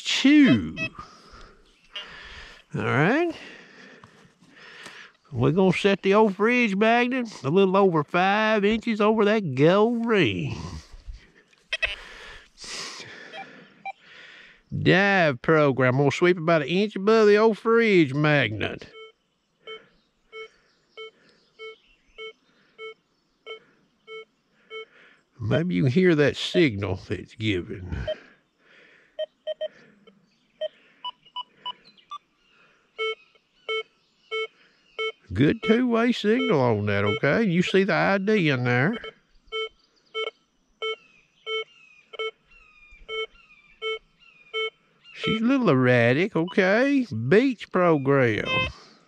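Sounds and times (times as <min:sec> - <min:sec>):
metal detector beeps: 0:00.0 - 0:01.1, 0:11.7 - 0:12.0, 0:18.6 - 0:24.9, 0:29.2 - 0:29.8, 0:33.0 - 0:46.9, 0:48.3 - 0:48.8.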